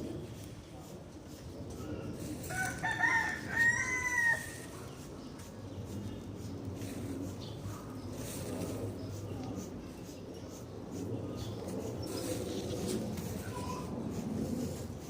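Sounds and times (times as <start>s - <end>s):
rooster crowing: 2.4s - 4.7s.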